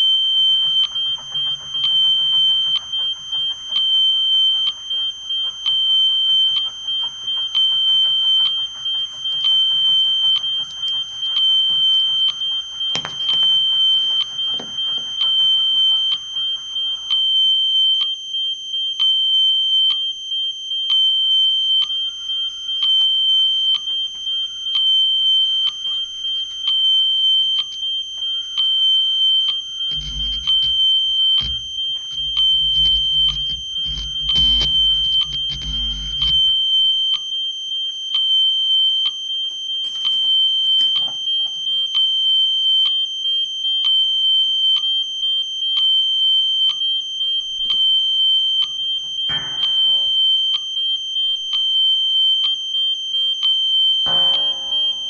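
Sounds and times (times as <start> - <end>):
electrical hum: 29.6 - 36.6.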